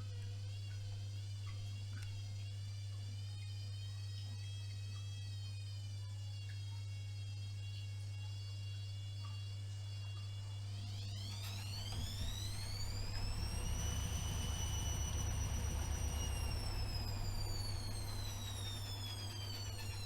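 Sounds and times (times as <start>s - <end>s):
washing machine motor whining: 9.6s - 20.0s
low hum: 11.4s - 20.0s
washing machine drum rumble: 11.4s - 20.0s.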